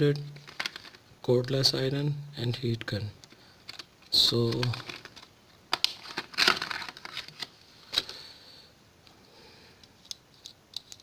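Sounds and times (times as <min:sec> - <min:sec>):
handling clicks and rustles: 0:03.2 - 0:08.1.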